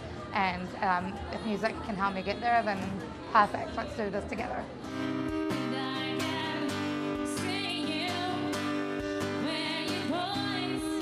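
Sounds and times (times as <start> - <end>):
acoustic guitar strumming: 4.8 - 11.0
person singing: 4.8 - 11.0.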